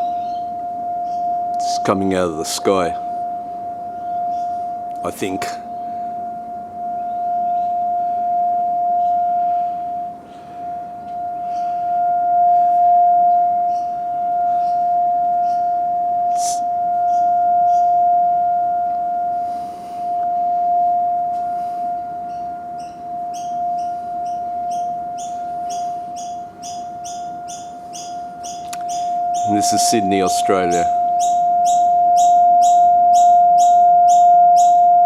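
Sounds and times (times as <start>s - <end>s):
small birds chirping: 0.0s - 34.9s
steady humming tone from the sky: 0.0s - 35.0s.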